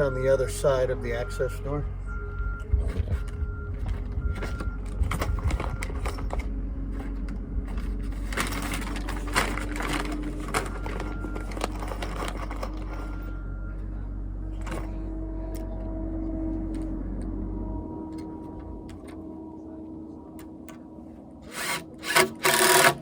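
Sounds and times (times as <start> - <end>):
engine running: 0.0 - 23.0
metal clanks and knocks: 2.7 - 19.4.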